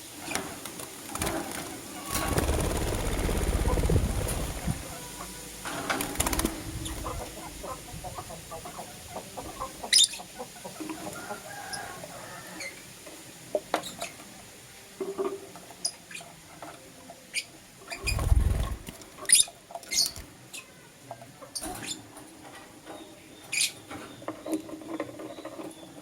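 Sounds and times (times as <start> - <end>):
low rumble: 2.4 - 5.0.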